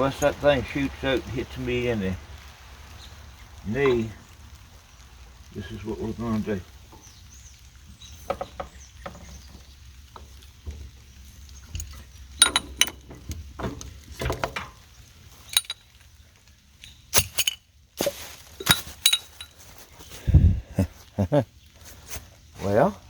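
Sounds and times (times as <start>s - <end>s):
metal clinking against metal: 11.7s - 14.8s, 15.4s - 16.1s, 16.8s - 19.8s.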